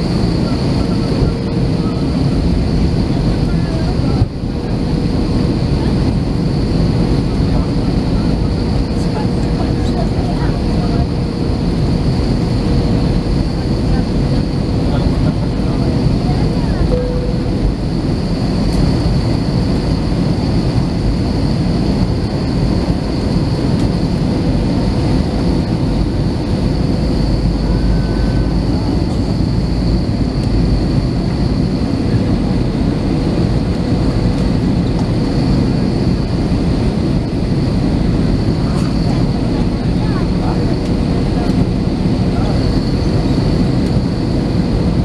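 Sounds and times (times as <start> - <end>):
engine and airflow rumble: 0.0 - 45.0
steady high whine: 0.0 - 45.0.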